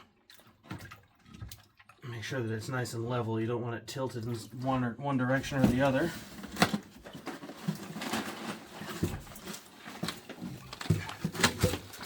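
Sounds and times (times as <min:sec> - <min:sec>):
pump and plastic pipe knocking: 0:08.9 - 0:12.0.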